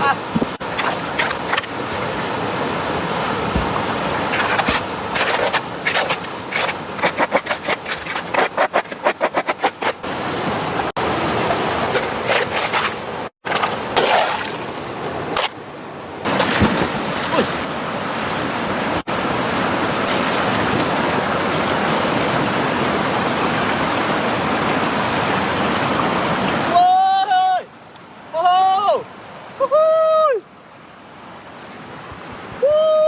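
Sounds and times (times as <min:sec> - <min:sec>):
rushing splashing water: 0:00.0 - 0:27.4.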